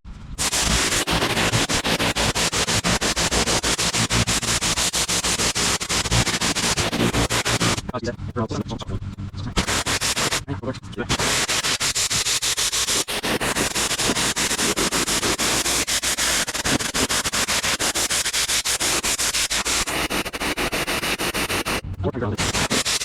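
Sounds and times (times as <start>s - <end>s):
pressure washer spraying concrete: 0.4s - 7.9s, 9.6s - 10.4s, 11.1s - 21.8s, 22.4s - 23.0s.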